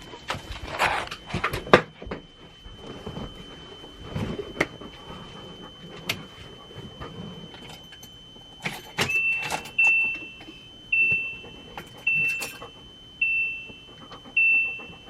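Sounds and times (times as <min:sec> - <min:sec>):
dashboard warning chime beeping: 0:01.1 - 0:15.0
keys rattling and clicking: 0:07.5 - 0:10.3, 0:11.7 - 0:12.7.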